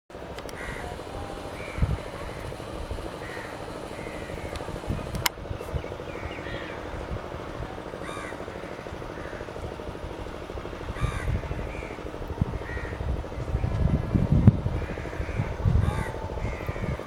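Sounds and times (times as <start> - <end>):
steady low hum and rumble: 0.1 - 17.0
crows cawing: 0.5 - 4.8, 6.1 - 6.9, 8.0 - 9.7, 10.9 - 13.2, 14.7 - 17.0.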